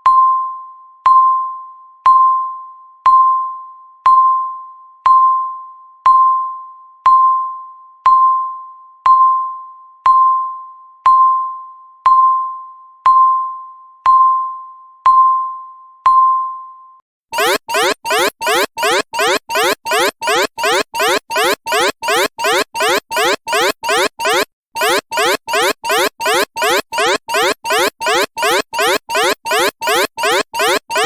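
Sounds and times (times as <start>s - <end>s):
timer alarm rising sweep: 17.4s - 31.0s
timer ticking dings: 17.4s - 31.0s.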